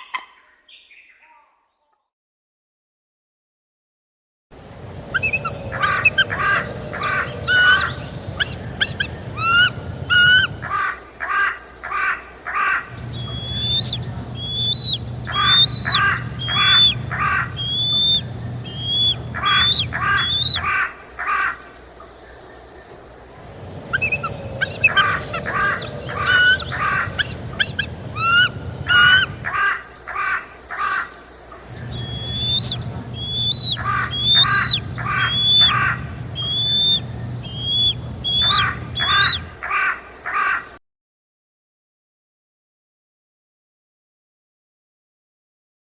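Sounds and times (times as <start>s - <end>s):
birds calling: 4.6s - 40.8s.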